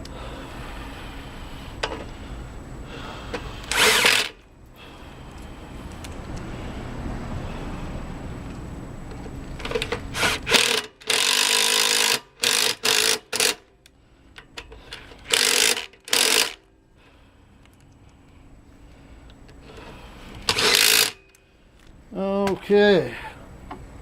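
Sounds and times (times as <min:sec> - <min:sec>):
cordless drill driving screws: 0:03.7 - 0:04.4, 0:10.2 - 0:13.6, 0:15.3 - 0:16.6, 0:20.4 - 0:21.2.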